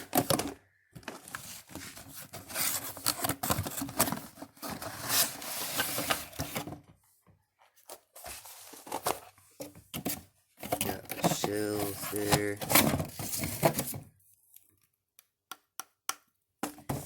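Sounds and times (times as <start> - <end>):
cardboard scraping and tearing: 1.1 - 6.5, 10.8 - 14.0.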